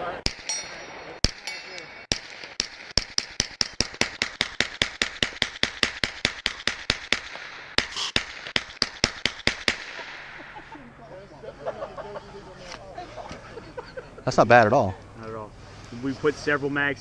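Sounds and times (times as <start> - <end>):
suppressed gunshots: 1.2 - 10.6.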